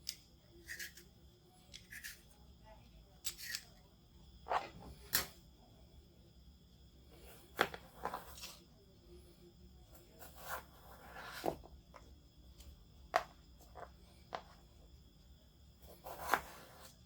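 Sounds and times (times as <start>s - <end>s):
peeler scraping potato skin: 0.6s - 1.1s, 1.8s - 2.2s.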